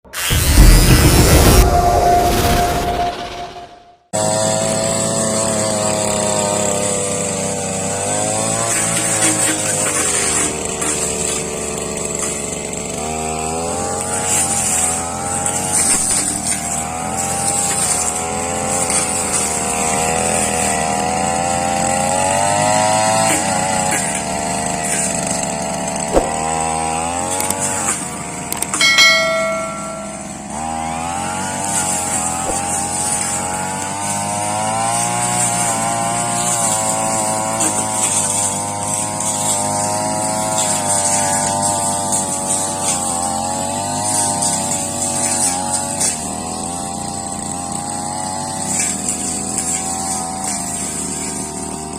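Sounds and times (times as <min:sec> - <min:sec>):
brush cutter engine under load: 0:04.2 - 0:51.9
short sharp ring: 0:28.7 - 0:30.6.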